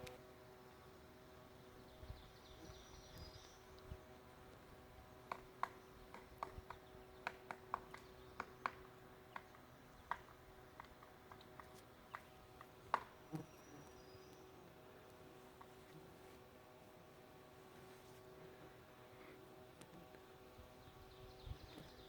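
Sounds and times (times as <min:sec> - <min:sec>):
woodpecker tapping on wood: 0:05.2 - 0:13.5.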